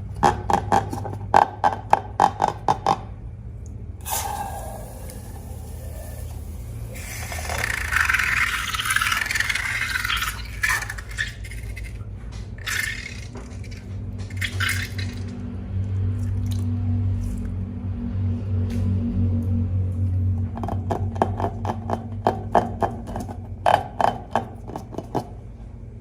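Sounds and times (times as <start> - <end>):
low steady hum: 0.0 - 26.0
liquid gushing into container: 4.0 - 12.0, 12.6 - 17.4
slime squishing: 4.0 - 17.6.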